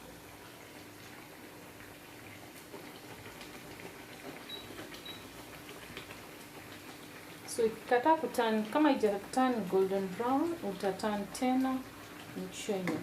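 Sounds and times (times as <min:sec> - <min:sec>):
dough frying in hot oil: 0:00.0 - 0:13.0
small crackles: 0:00.6 - 0:07.6.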